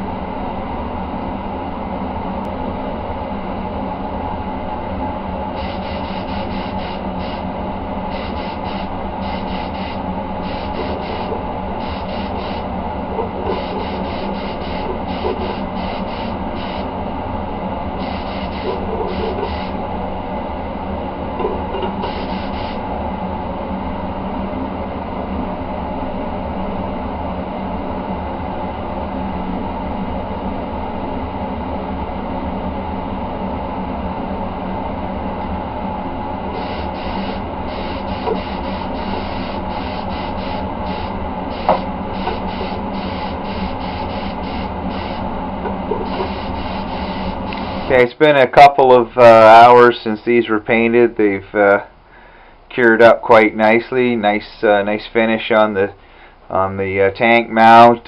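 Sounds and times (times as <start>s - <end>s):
air compressor running: 5.4s - 20.0s, 21.2s - 22.9s, 36.3s - 48.1s
spray gun air hiss: 5.5s - 7.5s, 8.1s - 12.7s, 13.4s - 16.9s, 18.0s - 19.8s, 22.0s - 22.8s, 36.5s - 45.3s, 46.0s - 48.0s.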